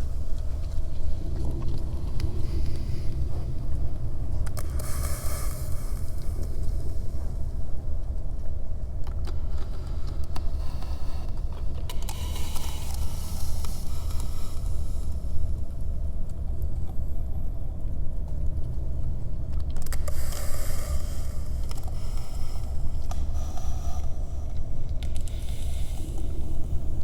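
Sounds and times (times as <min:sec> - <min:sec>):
steady low rumble: 0:00.0 - 0:27.0.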